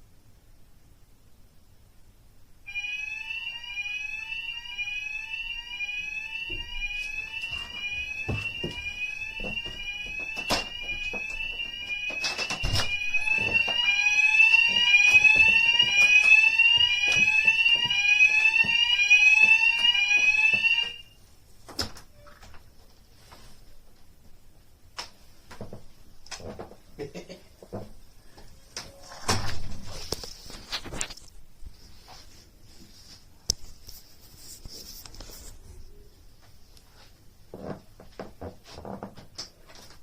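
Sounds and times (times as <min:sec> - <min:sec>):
smoke alarm sweep tone: 0:02.7 - 0:21.2.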